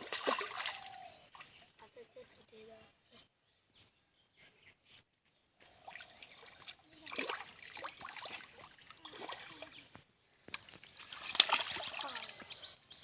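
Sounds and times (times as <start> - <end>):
splashing in shallow water: 0.0 - 1.8, 5.8 - 12.6.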